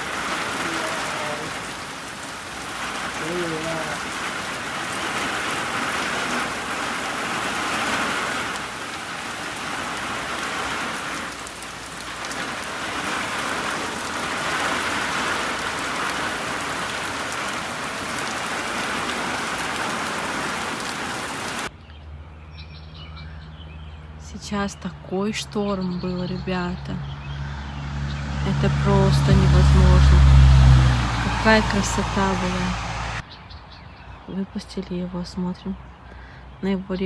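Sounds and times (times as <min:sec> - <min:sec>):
heavy rain pouring: 0:00.0 - 0:21.7, 0:28.4 - 0:33.2.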